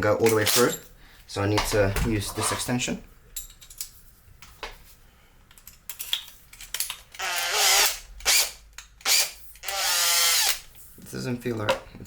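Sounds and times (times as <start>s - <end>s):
power drill whining: 7.2s - 10.6s.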